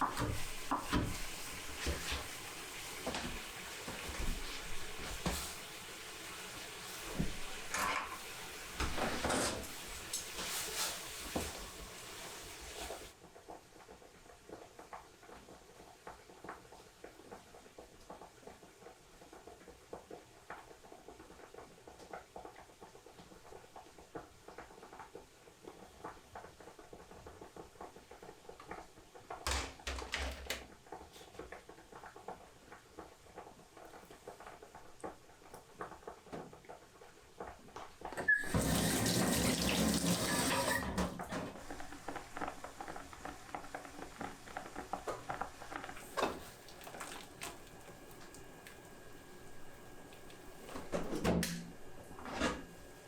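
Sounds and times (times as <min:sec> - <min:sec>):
kitchen clicks and knocks: 0:00.0 - 0:02.4, 0:07.1 - 0:10.5, 0:29.3 - 0:30.7, 0:50.7 - 0:52.7
tap running into sink: 0:00.0 - 0:13.0, 0:37.4 - 0:42.5, 0:44.9 - 0:48.9.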